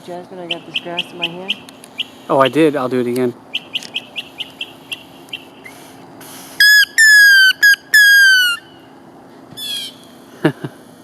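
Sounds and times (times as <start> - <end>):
faint bird call: 3.5 - 8.9
grass blade whistle squeals: 6.6 - 8.9.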